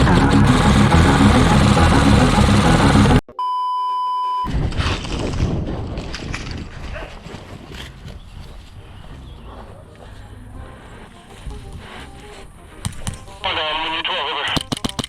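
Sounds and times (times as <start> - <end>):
loud mechanical rattle: 0.0 - 3.2
steady electronic beep: 0.0 - 4.5
faint outdoor sound: 5.9 - 15.0.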